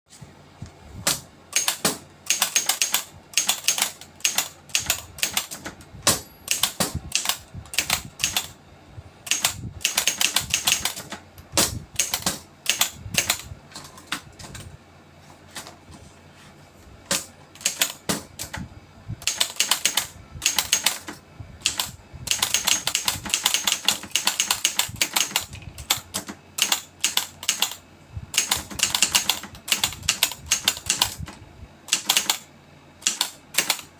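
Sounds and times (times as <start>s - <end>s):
typewriter key strikes: 1.0s - 8.6s, 9.3s - 14.7s, 17.1s - 18.6s, 19.2s - 27.8s, 28.4s - 31.3s, 31.9s - 32.4s, 33.0s - 33.9s.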